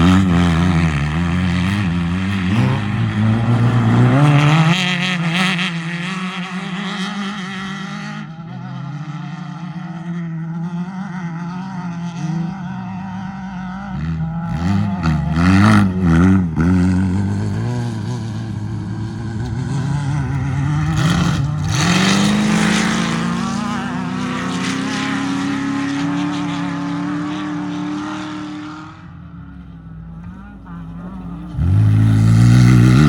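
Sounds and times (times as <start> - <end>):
race vehicle engine revving: 0.0 - 33.0.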